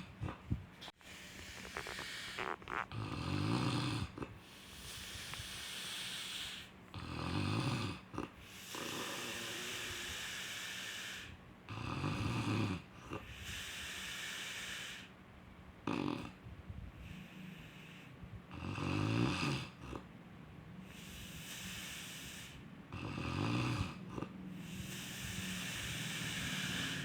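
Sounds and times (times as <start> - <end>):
airy hissing breath: 1.0 - 2.8, 4.4 - 6.8, 8.4 - 11.4, 13.3 - 15.2, 20.8 - 22.7, 24.5 - 27.0
low rattling snore: 1.0 - 11.0, 11.7 - 13.6, 15.8 - 16.4, 18.5 - 20.1, 20.9 - 27.0.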